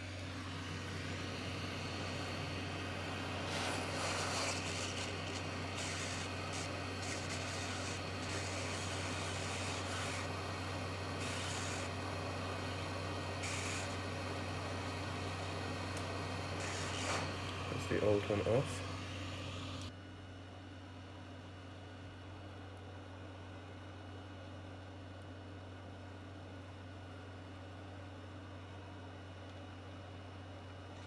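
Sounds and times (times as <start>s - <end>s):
hot air hissing: 0.0s - 19.9s
rework station fan hum: 0.0s - 20.1s.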